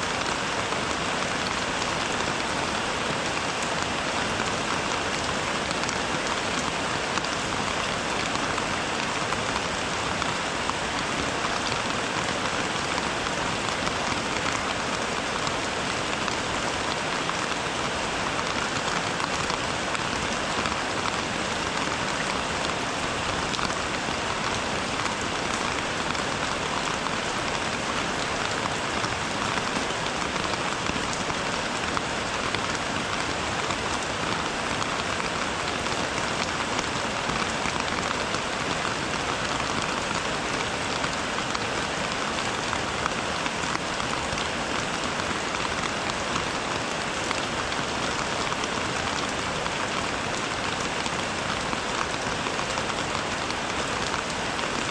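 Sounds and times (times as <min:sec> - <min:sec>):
steady rain falling: 0:00.0 - 0:54.9.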